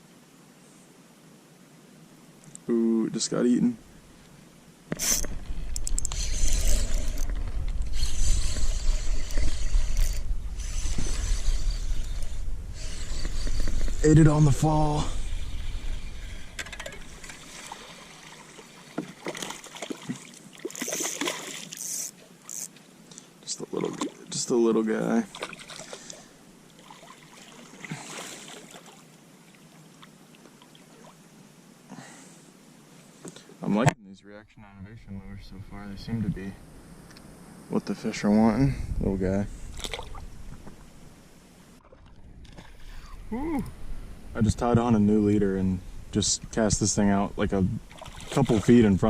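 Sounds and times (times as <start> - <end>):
water trickling and lapping: 3.9 - 14.0, 15.0 - 31.5, 39.5 - 43.8, 47.8 - 49.0
fishing reel clicking: 5.0 - 14.0, 21.7 - 22.7
wind buffeting microphone: 5.2 - 17.3, 38.6 - 41.0
water splashing: 13.5 - 22.4, 23.5 - 31.2, 39.7 - 41.0, 41.8 - 43.0, 47.9 - 49.0.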